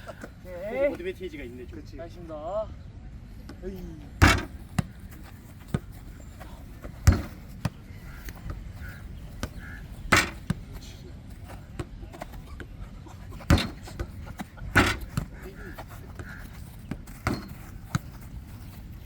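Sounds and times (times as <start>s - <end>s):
football thumps on table: 4.2s - 4.9s, 7.1s - 7.4s, 10.1s - 10.6s.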